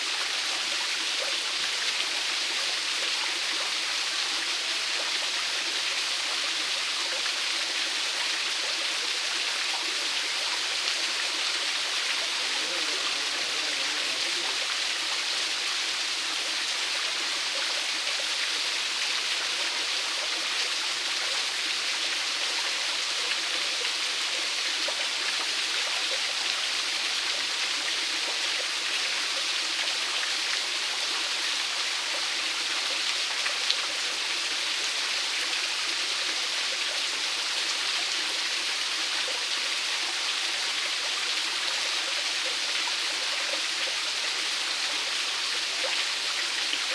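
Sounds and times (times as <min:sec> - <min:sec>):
waterfall splashing: 0:09.8 - 0:15.2.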